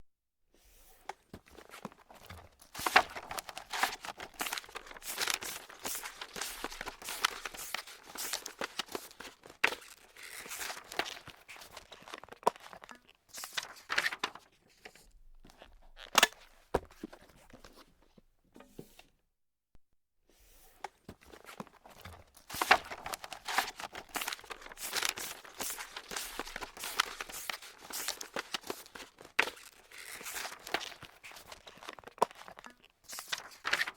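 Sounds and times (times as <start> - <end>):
paper crumpling: 1.6 - 14.4, 21.3 - 33.9.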